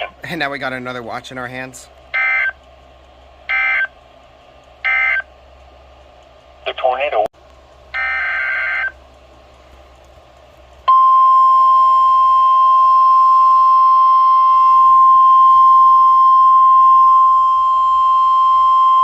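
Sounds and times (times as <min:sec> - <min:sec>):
faint background hum: 0:00.0 - 0:19.0
steady alarm beep tone: 0:02.2 - 0:02.6, 0:03.5 - 0:03.9, 0:04.8 - 0:05.3, 0:08.0 - 0:09.0, 0:10.9 - 0:19.0.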